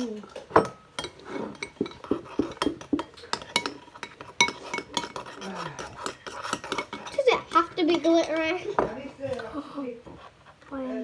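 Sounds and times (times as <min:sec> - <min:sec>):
spoons clinking against glass jars: 0:00.0 - 0:08.5.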